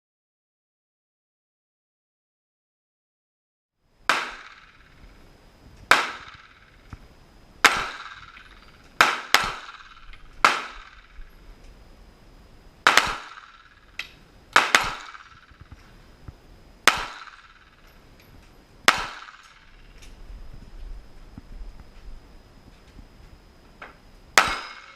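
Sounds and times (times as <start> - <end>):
pistol shots with echo: 4.1 - 5.1, 5.9 - 6.8, 7.6 - 11.3, 12.8 - 15.8, 16.8 - 17.9, 18.9 - 19.9, 24.4 - 24.9.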